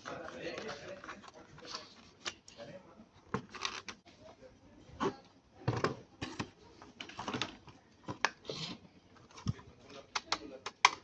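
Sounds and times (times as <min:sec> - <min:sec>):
hands handling toy and packaging: 0:00.0 - 0:04.1.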